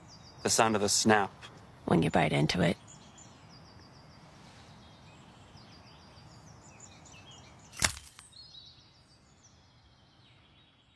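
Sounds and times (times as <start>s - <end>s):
faint birds chirping: 0.0s - 10.9s
chocolate bar snapping when bitten: 7.8s - 8.3s.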